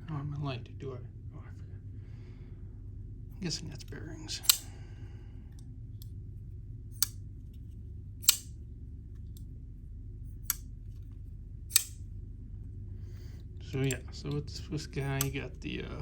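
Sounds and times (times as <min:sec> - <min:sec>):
folding knife clicks: 0:04.4 - 0:04.8, 0:07.0 - 0:07.2, 0:08.2 - 0:08.5, 0:10.4 - 0:10.7, 0:11.7 - 0:12.0, 0:15.0 - 0:15.4.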